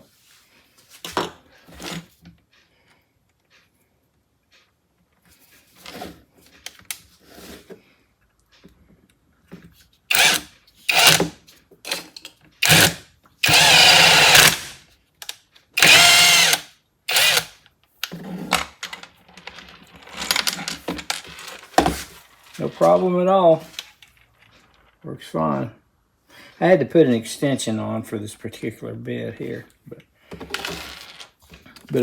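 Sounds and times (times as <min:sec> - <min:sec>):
drill driving a screw: 0:10.1 - 0:11.4, 0:12.6 - 0:14.8, 0:15.8 - 0:17.6.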